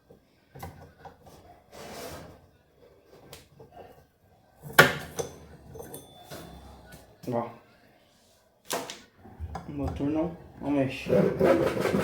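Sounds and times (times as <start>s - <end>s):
rubbing sound: 11.1s - 12.0s.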